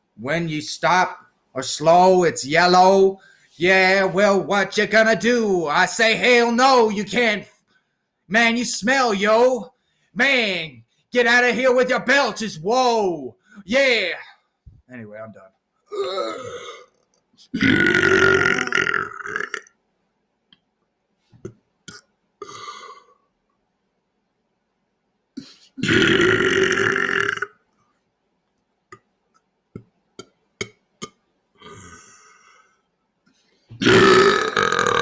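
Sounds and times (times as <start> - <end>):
man belching: 15.9 - 19.7, 21.9 - 23.1, 25.8 - 27.6, 33.8 - 35.0.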